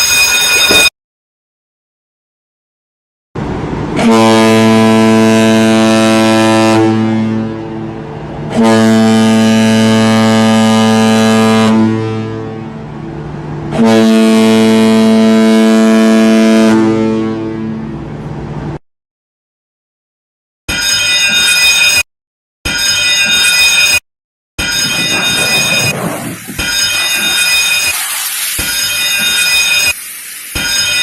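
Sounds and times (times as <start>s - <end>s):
ship's horn blasts: 3.4s - 18.8s.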